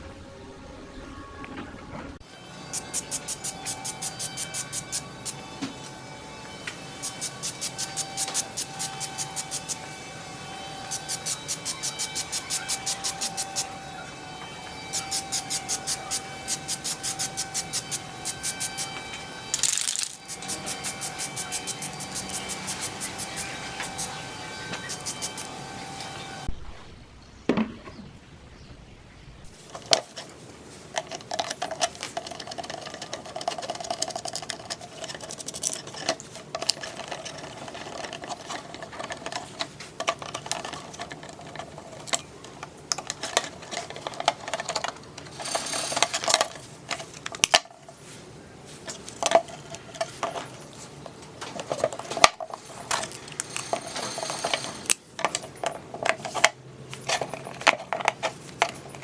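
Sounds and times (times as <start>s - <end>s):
small motor whining: 0.1s - 26.5s, 45.2s - 46.5s
clicks and knocks of metal parts: 15.0s - 24.1s, 29.7s - 48.0s, 48.8s - 59.0s.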